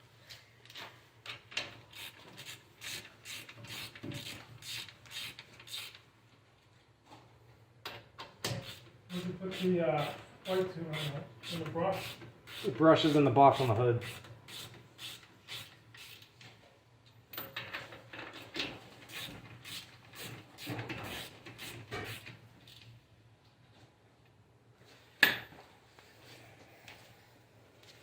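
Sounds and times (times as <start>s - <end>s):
tools clicking and tapping: 7.8s - 12.7s.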